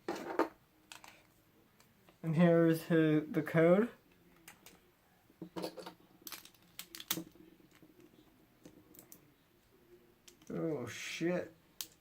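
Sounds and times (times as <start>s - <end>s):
small plastic parts clicking: 5.6s - 9.2s.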